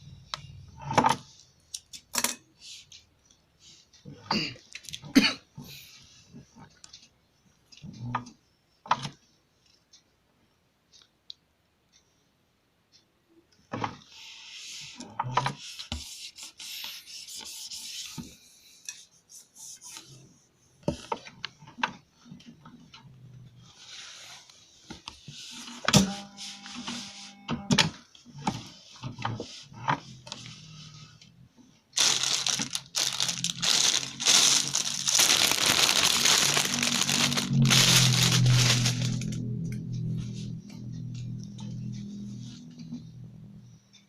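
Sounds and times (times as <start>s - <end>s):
fabric rubbing and rustling: 32.0s - 39.4s.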